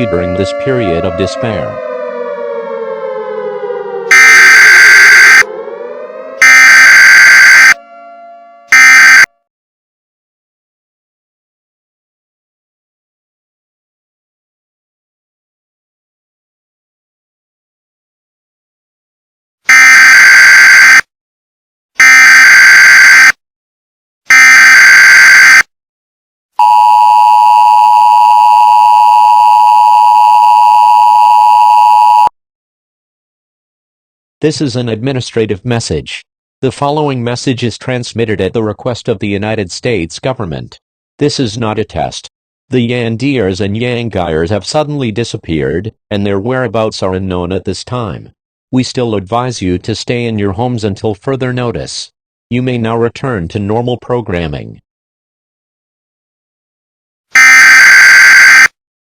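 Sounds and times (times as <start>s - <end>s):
loud distorted alarm blasts: 0.0s - 9.3s, 22.0s - 23.4s, 24.3s - 25.6s, 57.4s - 58.7s
siren winding down: 0.0s - 9.3s, 57.4s - 58.7s
data tone bursts: 4.1s - 5.4s, 6.4s - 7.8s, 8.8s - 9.3s, 57.4s - 58.7s
two-tone attention signal: 4.1s - 5.5s, 6.4s - 9.3s, 57.4s - 58.7s.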